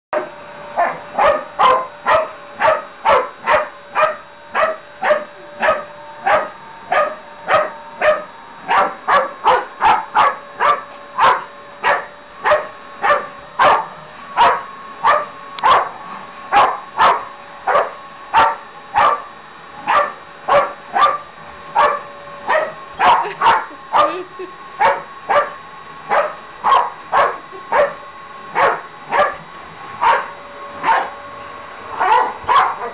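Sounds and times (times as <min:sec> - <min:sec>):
vacuum cleaner hum: 0:00.2 - 0:32.9
dog barking: 0:00.8 - 0:19.3, 0:19.9 - 0:21.2, 0:21.8 - 0:24.2, 0:24.8 - 0:28.0, 0:28.6 - 0:29.4, 0:30.0 - 0:31.1, 0:32.0 - 0:32.9.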